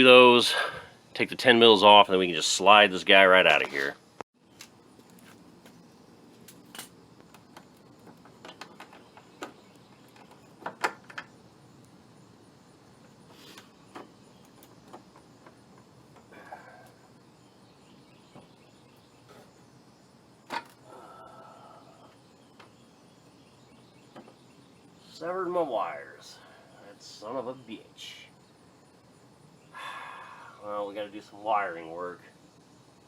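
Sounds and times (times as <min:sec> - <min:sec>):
clicks and knocks of plastic parts: 0:06.6 - 0:11.3.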